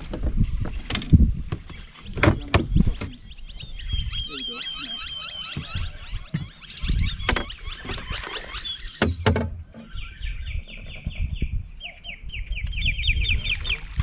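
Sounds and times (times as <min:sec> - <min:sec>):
bird chirping rapidly: 0:03.2 - 0:13.4
sharp knocks: 0:07.2 - 0:08.1.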